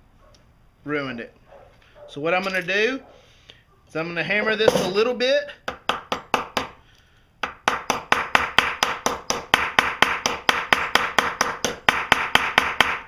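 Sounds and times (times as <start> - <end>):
hammer tapping metal nail: 7.4 - 13.0.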